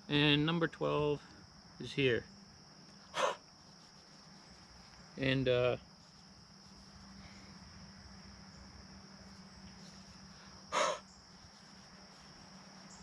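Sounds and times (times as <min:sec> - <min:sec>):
crickets chirping: 0:00.0 - 0:13.0
person breathy vocal noise: 0:03.2 - 0:03.4, 0:10.7 - 0:11.0.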